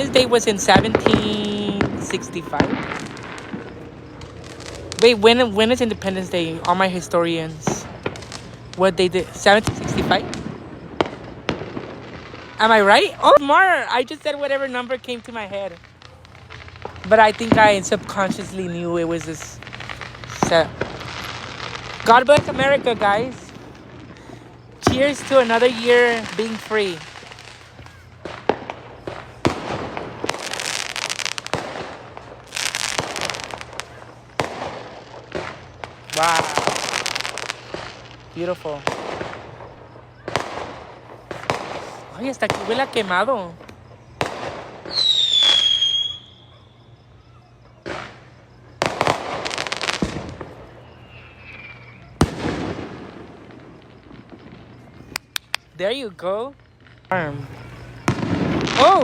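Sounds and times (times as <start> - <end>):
firework bangs: 0.0 - 59.0
firework crackling: 0.0 - 59.0
faint falling whistle: 44.9 - 48.8, 50.7 - 52.3.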